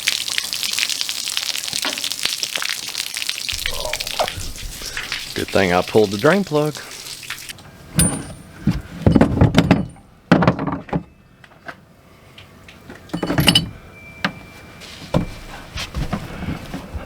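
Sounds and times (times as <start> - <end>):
high metallic ring: 8.0 - 8.6, 13.2 - 15.1
metal tools knocking and clanking: 8.0 - 11.2, 13.1 - 13.8.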